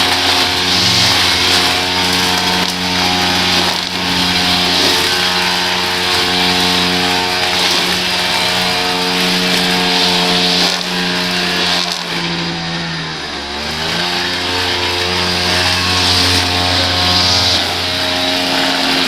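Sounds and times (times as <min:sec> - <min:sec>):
small petrol engine running: 0:00.0 - 0:19.0.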